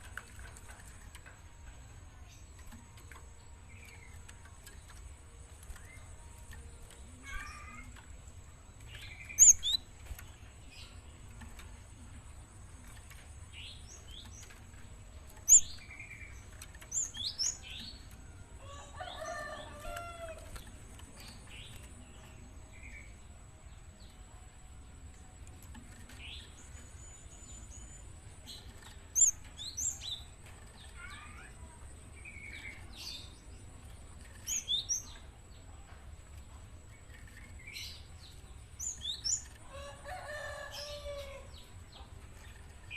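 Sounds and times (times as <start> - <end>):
bird chirping: 8.8 - 11.4.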